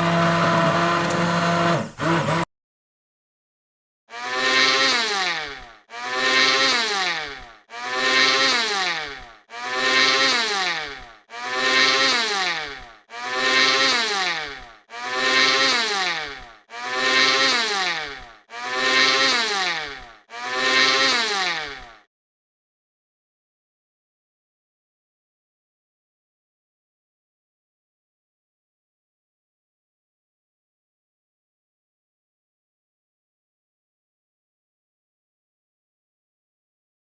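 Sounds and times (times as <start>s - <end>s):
blender motor whining in pulses: 0.0s - 2.5s, 4.1s - 22.1s.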